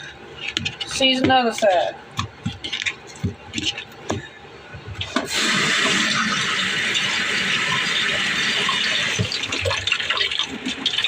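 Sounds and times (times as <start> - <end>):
tap water running into sink: 5.1 - 11.0.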